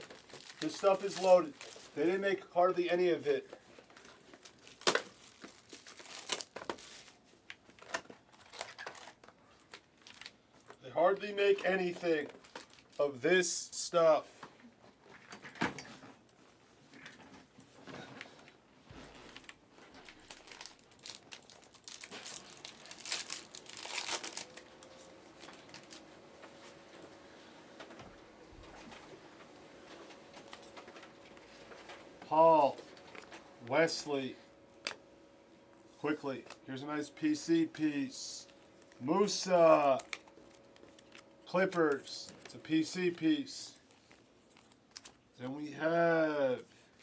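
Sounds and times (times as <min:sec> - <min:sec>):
plastic packaging crinkling and tearing: 0:00.0 - 0:02.0, 0:03.7 - 0:10.7, 0:12.2 - 0:13.0, 0:19.2 - 0:26.1, 0:39.9 - 0:42.5, 0:43.8 - 0:45.2.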